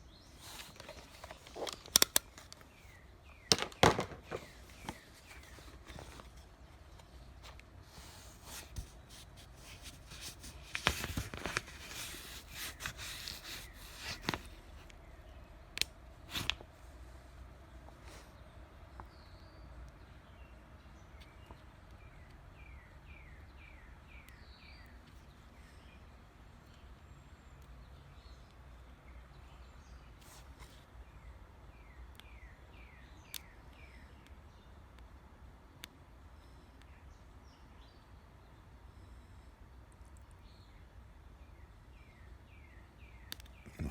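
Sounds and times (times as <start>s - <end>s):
small objects clicking and rustling: 3.5s - 6.2s.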